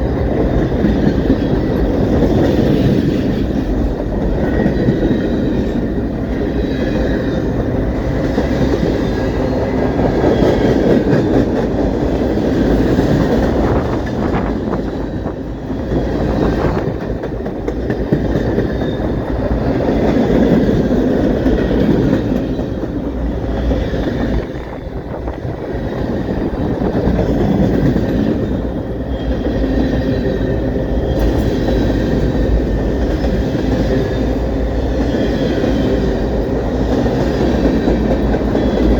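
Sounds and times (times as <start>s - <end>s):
train cars rolling on track: 0.0s - 38.9s.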